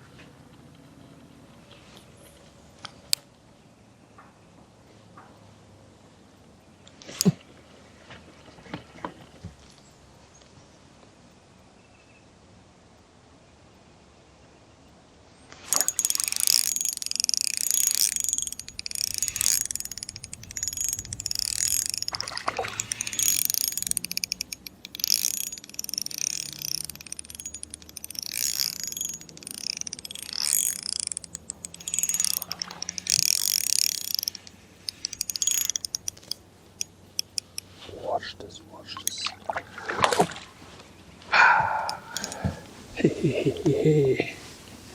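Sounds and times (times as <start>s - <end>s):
fishing reel drag clicking: 15.6s - 37.8s, 38.4s - 39.3s, 41.6s - 42.8s.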